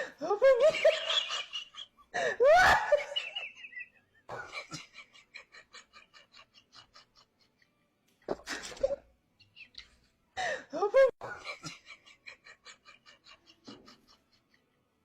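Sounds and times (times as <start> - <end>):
person laughing hard: 0.1 - 7.3.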